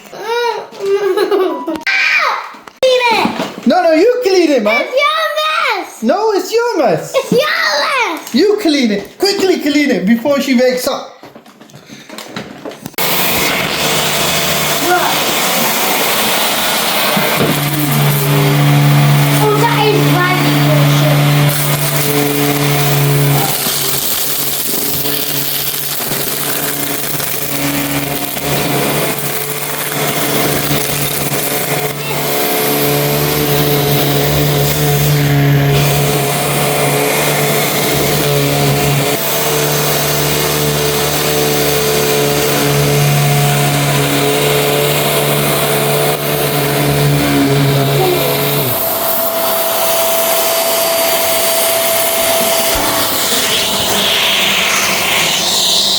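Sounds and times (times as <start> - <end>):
vacuum cleaner running: 12.8 - 55.9.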